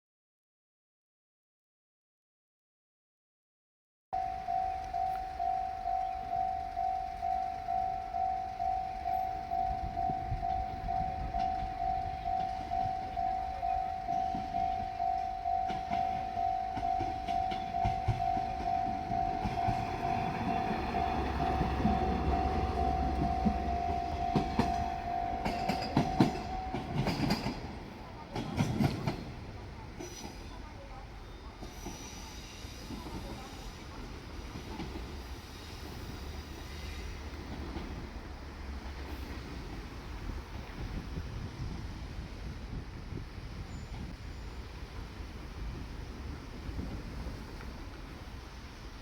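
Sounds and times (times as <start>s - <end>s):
level crossing warning bell: 4.2s - 28.2s
diesel railcar rumble: 4.2s - 49.0s.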